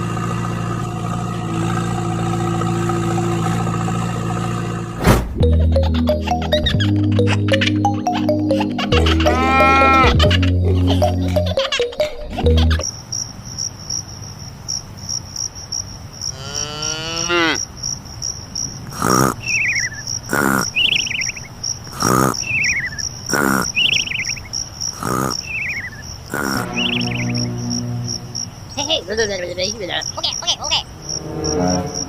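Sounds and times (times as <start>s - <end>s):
sharp knock: 5.0s - 5.4s
crickets trilling: 12.6s - 32.0s.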